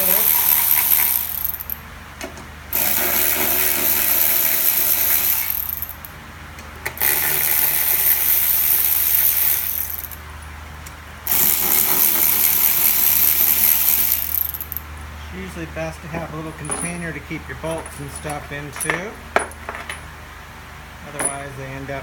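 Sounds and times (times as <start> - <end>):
handheld power tool running: 0.0 - 1.8, 2.7 - 6.0, 7.0 - 10.2, 11.3 - 14.8.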